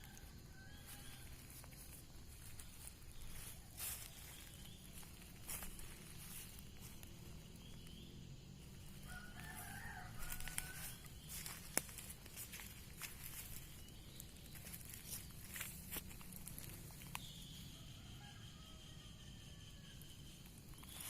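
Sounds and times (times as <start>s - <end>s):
low outdoor background: 0.0s - 21.0s
rooster crowing faintly: 8.9s - 11.8s.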